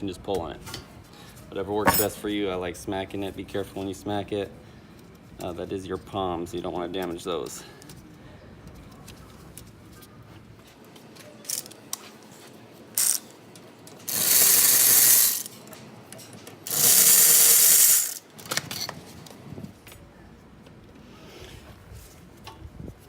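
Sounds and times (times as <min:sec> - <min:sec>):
power ratchet spinning: 0:13.0 - 0:13.3, 0:14.0 - 0:15.6, 0:16.6 - 0:18.2
ratchet clicks: 0:13.0 - 0:13.3, 0:14.0 - 0:15.5, 0:16.7 - 0:18.2.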